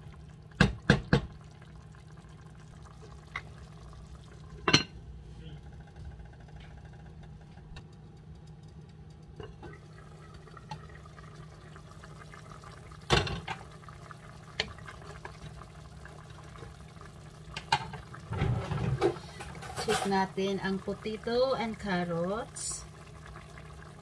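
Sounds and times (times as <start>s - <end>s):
pot of curry simmering: 5.6s - 19.8s, 22.4s - 24.0s.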